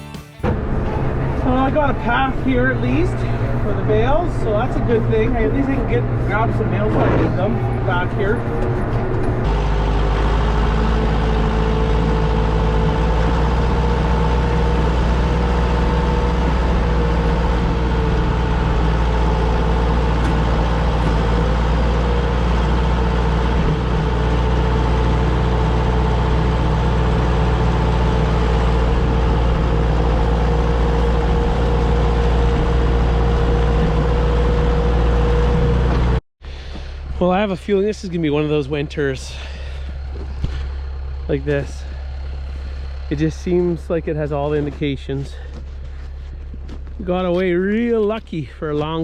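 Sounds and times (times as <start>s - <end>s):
steady engine whine: 0.4s - 49.0s
tractor diesel engine rumbling: 0.4s - 49.0s.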